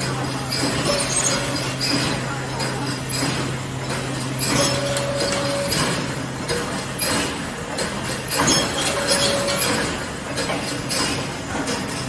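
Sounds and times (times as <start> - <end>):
metallic clinks and clacks: 0.5 - 3.5.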